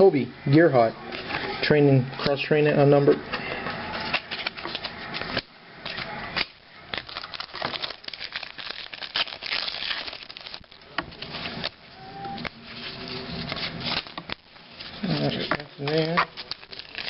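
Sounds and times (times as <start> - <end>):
cards rustling: 3.7 - 17.0
card pack wrappers crinkling: 4.0 - 11.8, 12.4 - 17.0.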